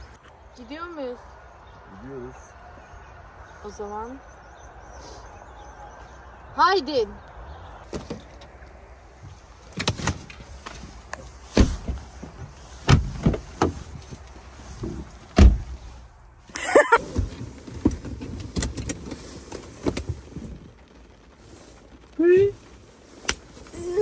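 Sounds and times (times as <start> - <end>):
car doors clunking: 9.2 - 15.8.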